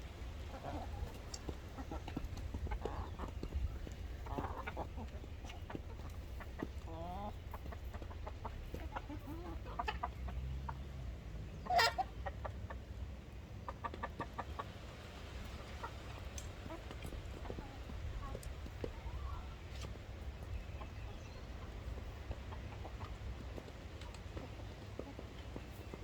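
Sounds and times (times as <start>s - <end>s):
chickens clucking: 0.0s - 26.0s
chicken squawk: 11.6s - 12.4s.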